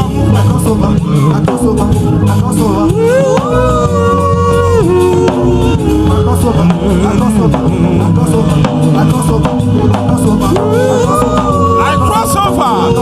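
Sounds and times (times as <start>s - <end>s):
drum and bass groove: 0.0s - 13.0s
person singing: 0.0s - 13.0s.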